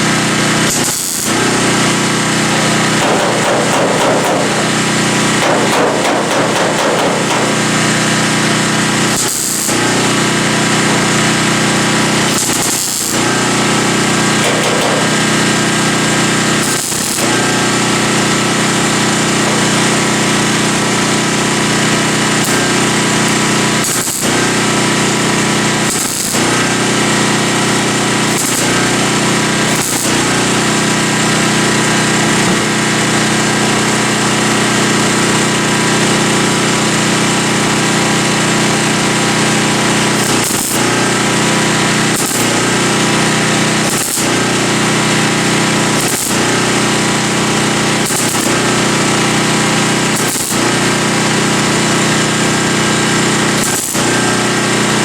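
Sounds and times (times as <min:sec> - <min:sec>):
power tool motor running: 0:00.0 - 0:55.0.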